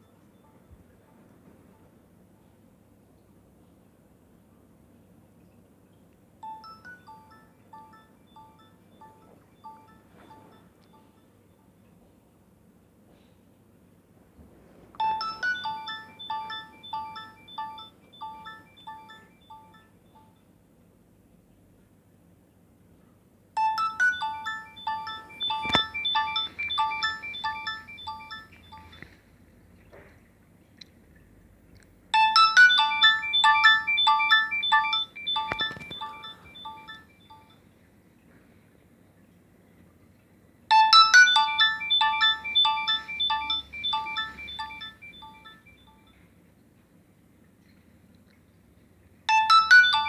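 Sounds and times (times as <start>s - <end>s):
phone ringtone melody: 6.4s - 11.2s, 15.0s - 20.4s, 23.6s - 29.2s, 32.2s - 37.6s, 40.7s - 46.1s, 49.3s - 50.0s.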